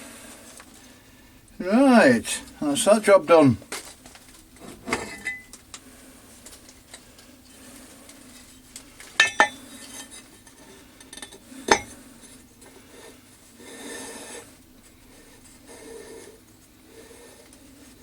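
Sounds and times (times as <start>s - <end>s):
faint steady hum: 0.0s - 18.0s
metal tools clinking: 9.2s - 10.2s.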